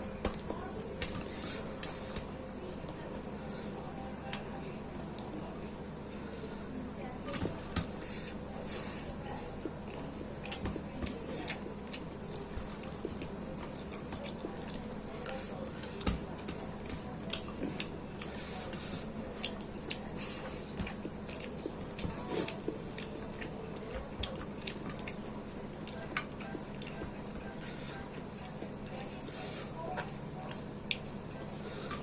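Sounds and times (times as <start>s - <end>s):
faint steady hum: 0.0s - 32.0s
chewing and biting food: 7.5s - 31.3s.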